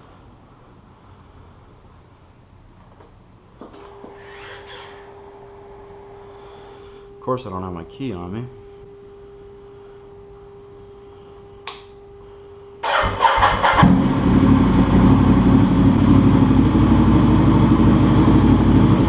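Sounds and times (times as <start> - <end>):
motorcycle starter cranking: 12.8 - 14.0
motorcycle engine idling loudly: 13.3 - 19.0.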